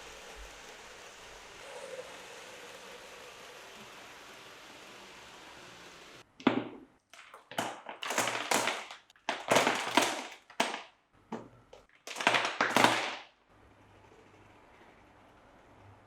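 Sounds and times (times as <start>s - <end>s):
packaging rustling and scraping: 7.2s - 10.8s, 11.7s - 13.2s.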